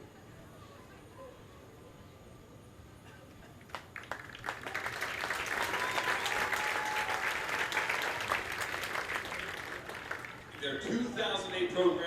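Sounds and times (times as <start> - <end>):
stadium crowd applauding: 3.6 - 12.0.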